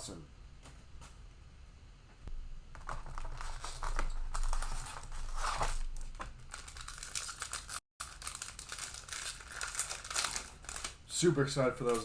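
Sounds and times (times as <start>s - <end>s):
plastic wrapper tearing and crinkling: 2.8s - 12.0s.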